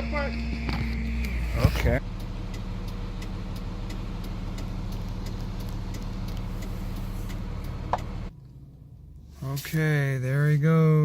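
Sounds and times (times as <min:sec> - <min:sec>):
vehicle engine idling: 0:00.0 - 0:10.7
faint regular ticking: 0:02.0 - 0:08.3.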